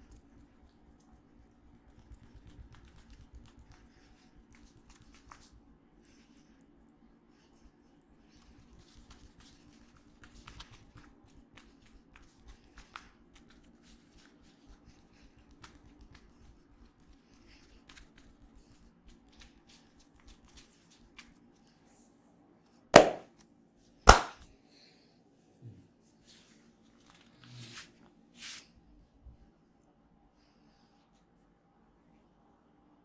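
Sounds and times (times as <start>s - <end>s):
hands rubbing skin: 23.0s - 23.2s, 24.1s - 24.3s
loud sharp neck cracks: 23.0s - 23.2s, 24.1s - 24.3s.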